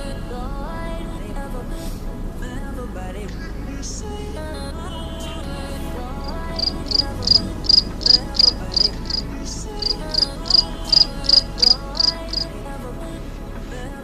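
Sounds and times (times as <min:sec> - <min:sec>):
background music: 0:00.0 - 0:14.0
cricket chirps: 0:06.2 - 0:09.2, 0:09.8 - 0:12.5.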